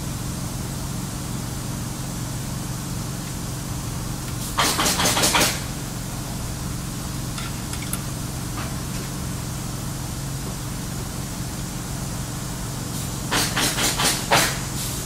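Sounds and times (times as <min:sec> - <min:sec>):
steady low hum: 0:00.0 - 0:13.1.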